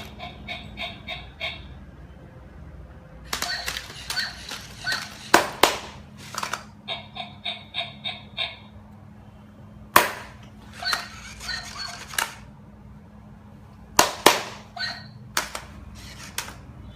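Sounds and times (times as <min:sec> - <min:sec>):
toy clicks and knocks: 0:03.3 - 0:06.8, 0:10.1 - 0:12.5, 0:14.0 - 0:16.6.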